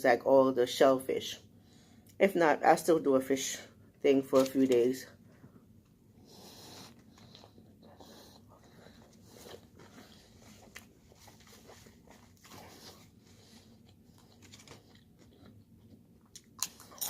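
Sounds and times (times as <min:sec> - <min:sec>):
faint chewing: 0:05.2 - 0:17.0.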